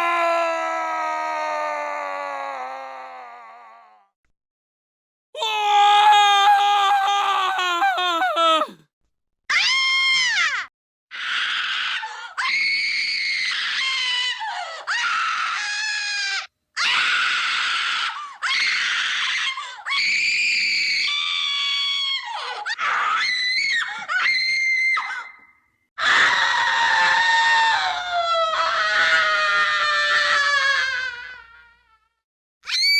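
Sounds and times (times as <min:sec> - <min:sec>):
human screams: 0:00.0 - 0:04.1, 0:05.4 - 0:08.8, 0:26.0 - 0:32.0, 0:32.6 - 0:32.9.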